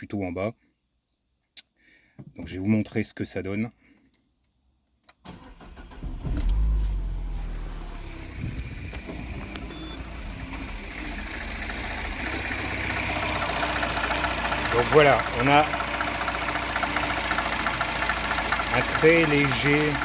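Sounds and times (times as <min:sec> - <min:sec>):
engine cranking and starting: 0:05.2 - 0:20.0
car engine idling: 0:05.3 - 0:20.0
mechanical rubbing and ticking: 0:10.6 - 0:20.0.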